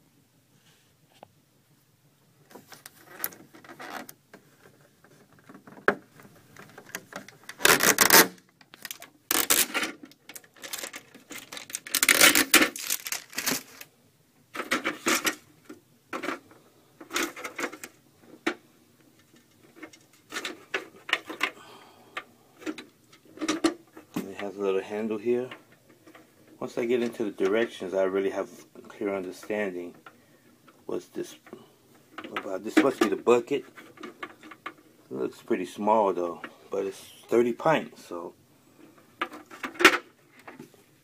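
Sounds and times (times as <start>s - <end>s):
packaging rustling and scraping: 2.5s - 13.9s.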